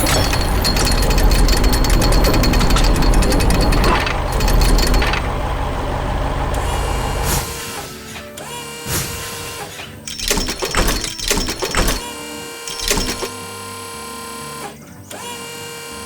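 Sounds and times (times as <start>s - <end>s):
heavy engine rumble: 0.0s - 8.2s
hydraulic rock breaker hammering: 0.0s - 13.6s.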